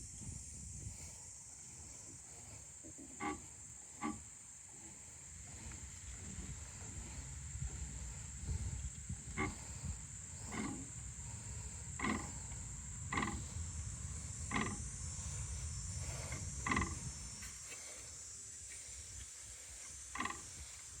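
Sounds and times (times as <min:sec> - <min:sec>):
faint high whine: 0:00.0 - 0:21.0
short buzzy rattle: 0:05.5 - 0:17.4.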